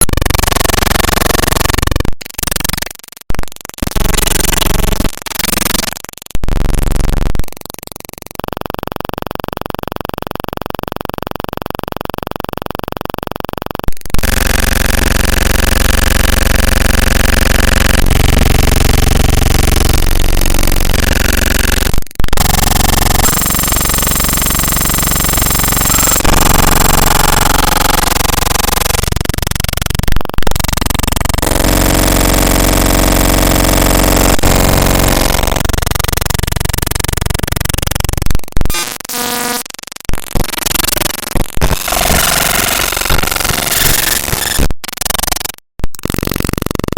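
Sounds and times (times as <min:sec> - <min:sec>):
stuttering buzzing tone: 0:00.0 - 0:46.9
distorted noise bursts: 0:14.0 - 0:46.2.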